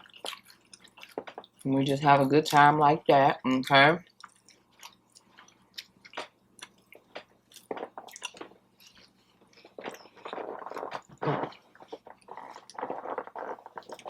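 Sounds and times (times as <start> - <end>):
person chewing food: 0.0 - 1.7, 4.0 - 14.0.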